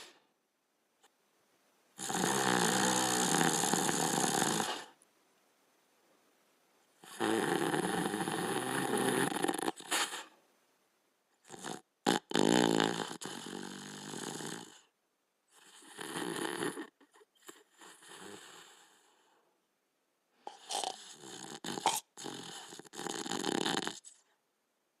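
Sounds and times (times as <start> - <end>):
dog snoring: 2.0 - 5.0, 7.0 - 10.4, 11.4 - 14.9, 15.5 - 19.4, 20.5 - 24.3.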